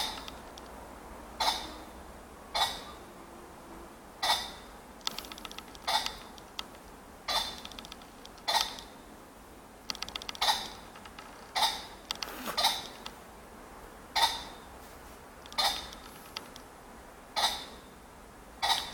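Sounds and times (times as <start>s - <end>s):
pheasant harsh calls: 1.4s - 1.9s, 2.5s - 3.1s, 4.2s - 4.7s, 5.8s - 6.4s, 7.3s - 7.7s, 8.4s - 8.9s, 10.4s - 10.8s, 11.5s - 13.1s, 14.1s - 14.7s, 15.5s - 16.2s, 17.4s - 17.9s, 18.6s - 18.9s
rapid clicking: 9.9s - 11.4s.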